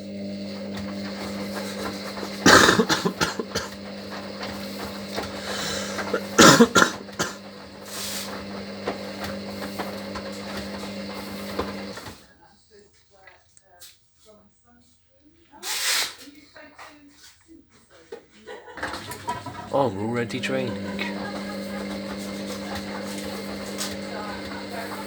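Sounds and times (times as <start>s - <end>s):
washer drum motor humming: 0.0s - 12.2s, 18.7s - 25.0s.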